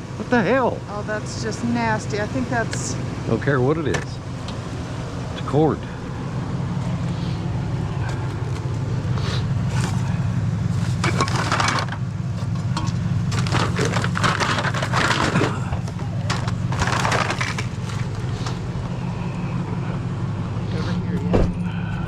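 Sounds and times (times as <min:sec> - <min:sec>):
vehicle idling: 0:00.0 - 0:22.0
crunching and rustling: 0:06.8 - 0:19.4.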